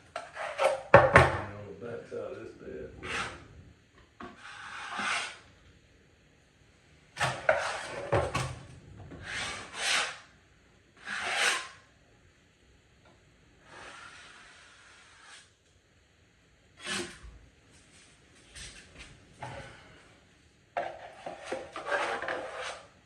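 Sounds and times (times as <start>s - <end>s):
taping knife scraping wall: 0.1s - 0.9s, 3.0s - 3.5s, 4.2s - 5.5s, 7.2s - 8.6s, 9.2s - 10.3s, 11.0s - 11.8s, 13.6s - 15.6s, 16.8s - 17.3s, 20.8s - 23.0s.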